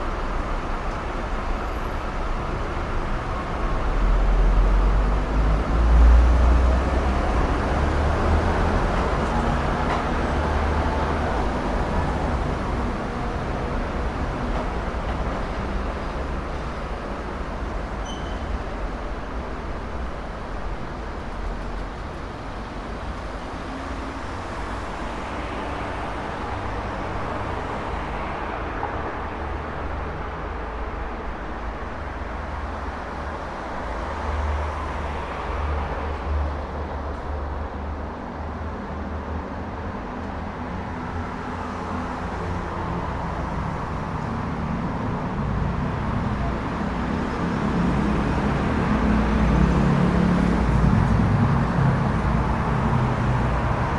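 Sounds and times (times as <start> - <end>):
cars passing: 0.0 - 53.9.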